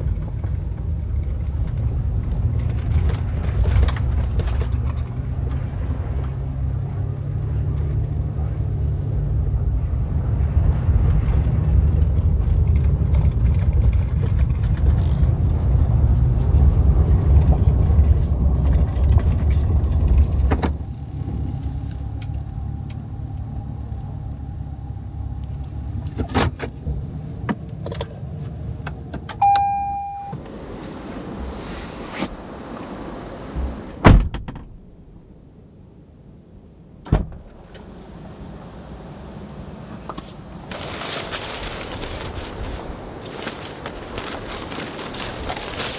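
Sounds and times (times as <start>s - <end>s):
pickup truck engine running: 0.0s - 30.4s
short electronic beep: 29.4s - 30.4s.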